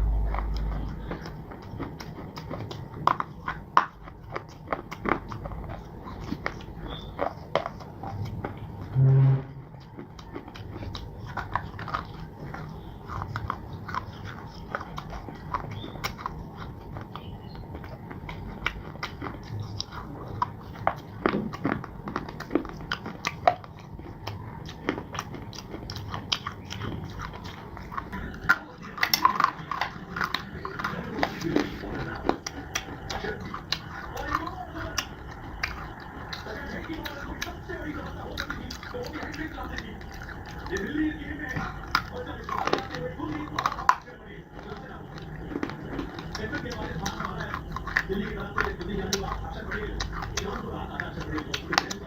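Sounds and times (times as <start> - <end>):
person chewing crunchy clay: 0.0 - 52.0.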